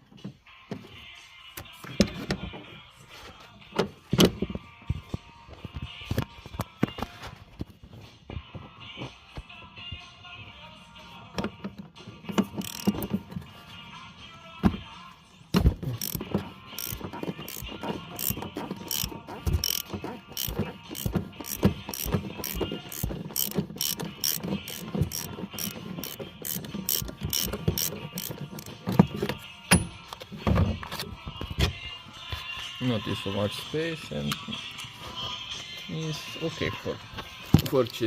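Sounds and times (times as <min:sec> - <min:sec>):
ratchet wrench clicking: 0:12.4 - 0:13.2, 0:15.8 - 0:29.0.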